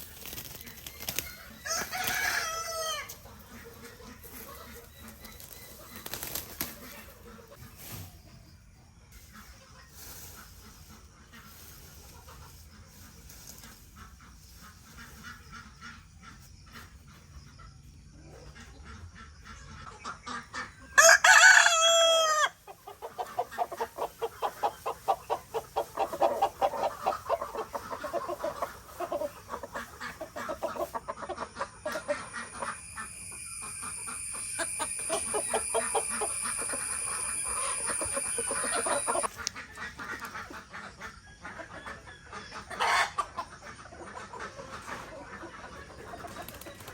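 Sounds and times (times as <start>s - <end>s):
chickens clucking: 0.0s - 46.9s
rooster crowing: 1.6s - 3.1s, 21.0s - 22.6s
high-pitched whine: 32.0s - 39.3s.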